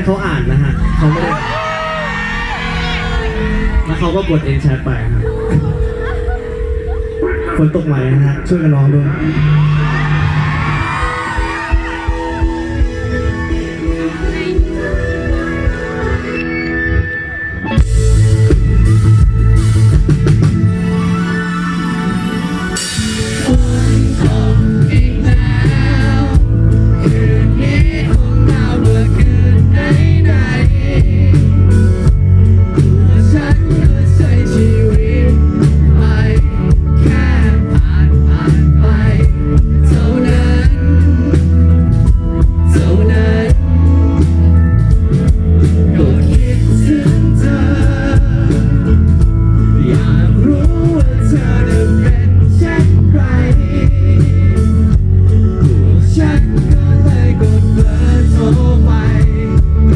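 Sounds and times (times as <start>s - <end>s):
pop-rock band playing: 0.0s - 59.9s
lead vocal singing: 9.0s - 16.7s, 22.8s - 59.9s.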